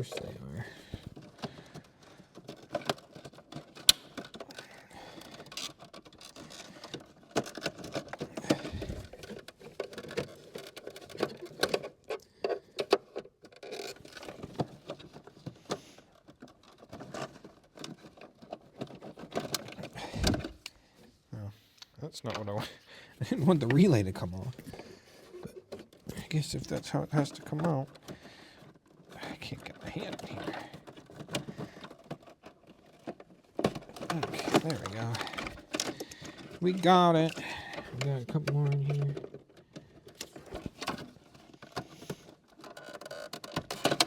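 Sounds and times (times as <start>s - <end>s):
plastic clicks and knocks: 0.1s - 20.8s, 23.6s - 44.0s.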